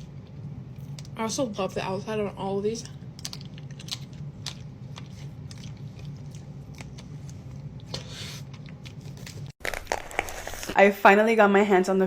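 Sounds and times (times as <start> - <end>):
wet mouth eating sounds: 3.2 - 9.5.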